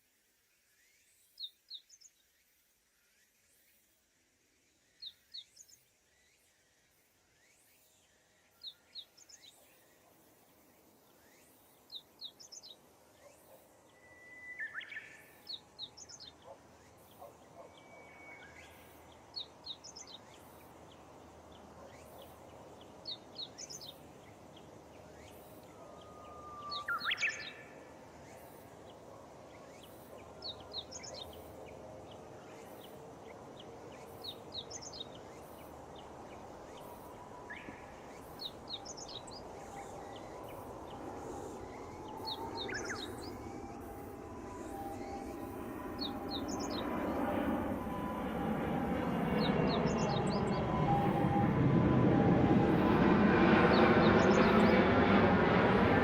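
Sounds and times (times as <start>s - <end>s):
bird chirping: 11.1s - 48.3s.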